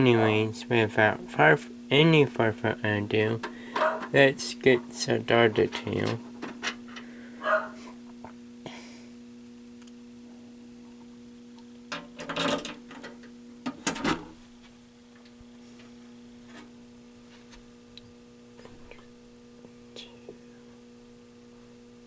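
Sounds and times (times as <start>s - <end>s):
low electrical hum: 0.0s - 22.0s
clattering handling noise: 3.4s - 4.9s, 11.9s - 14.4s.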